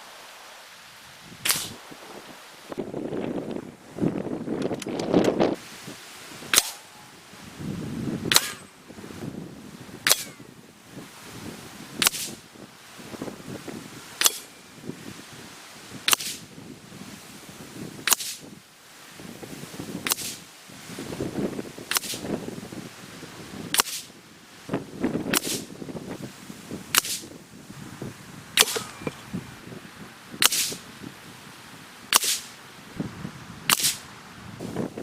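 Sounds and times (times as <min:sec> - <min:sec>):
air rifle shots: 0:01.4 - 0:01.8, 0:06.5 - 0:07.0, 0:08.3 - 0:08.7, 0:10.0 - 0:10.4, 0:12.0 - 0:12.4, 0:28.6 - 0:29.2, 0:30.4 - 0:30.8, 0:32.1 - 0:32.5, 0:33.7 - 0:34.0.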